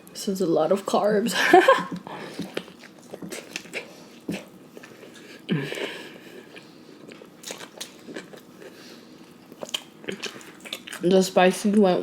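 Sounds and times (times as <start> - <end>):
person chewing crunchy food: 1.9 - 11.1.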